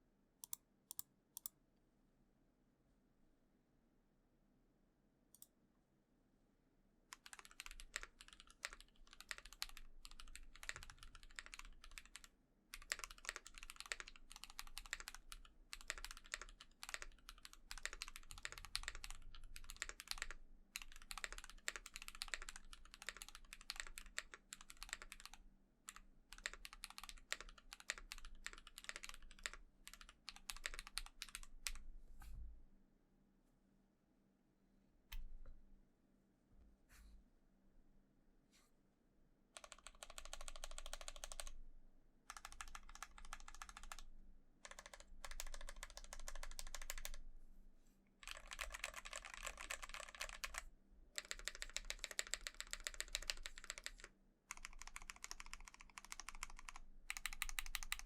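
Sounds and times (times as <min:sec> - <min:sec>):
mechanical keyboard typing: 0:07.1 - 0:31.8, 0:39.6 - 0:41.6, 0:42.3 - 0:47.2, 0:48.2 - 0:50.6, 0:51.2 - 0:58.0.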